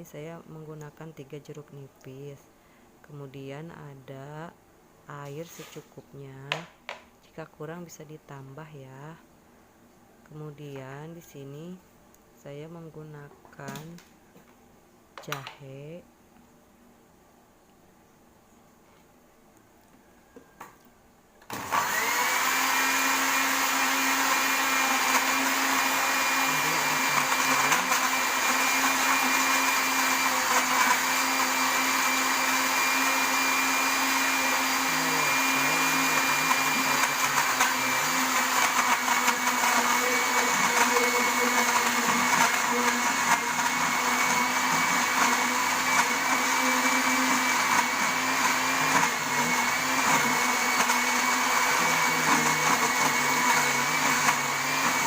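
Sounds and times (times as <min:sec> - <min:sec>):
electric blender whining: 0:21.5 - 0:55.0.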